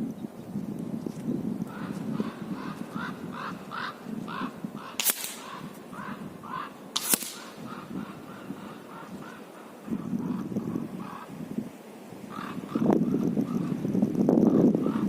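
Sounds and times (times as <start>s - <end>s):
bird calling: 1.6s - 11.4s, 12.3s - 15.0s
air rifle shots: 4.4s - 9.1s.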